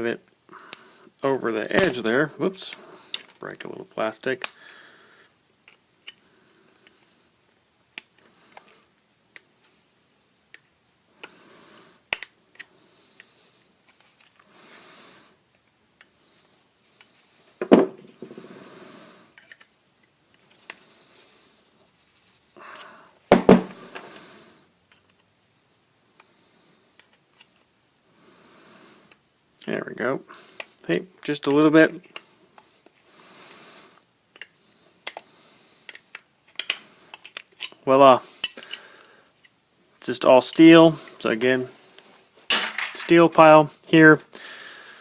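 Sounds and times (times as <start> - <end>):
plastic connector clicking and scraping: 34.4 - 35.2.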